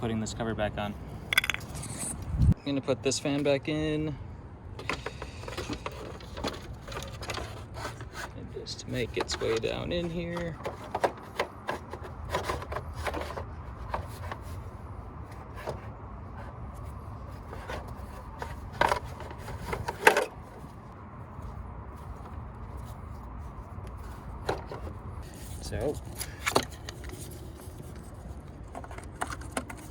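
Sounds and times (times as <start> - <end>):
plastic shroud rubbing and knocking: 4.8 - 14.7, 15.3 - 20.7.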